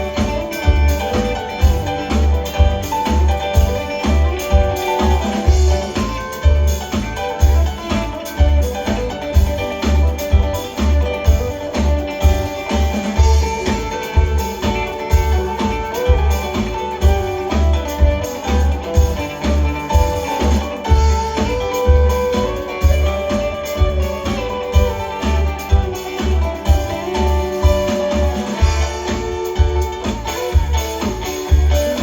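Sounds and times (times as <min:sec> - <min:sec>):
bass: 0:00.0 - 0:32.0
lead guitar bending notes: 0:00.0 - 0:32.0
steady low drum beat: 0:00.0 - 0:32.0.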